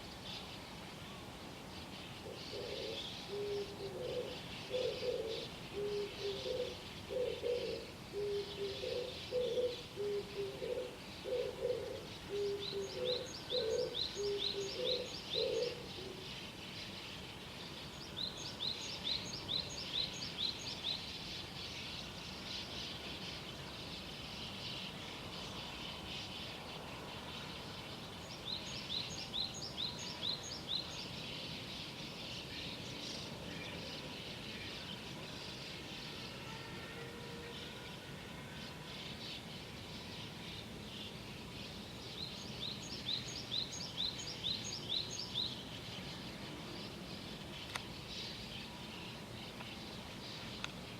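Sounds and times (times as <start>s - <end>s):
small songbirds chirping: 0.0s - 50.9s
dove cooing: 2.2s - 16.2s.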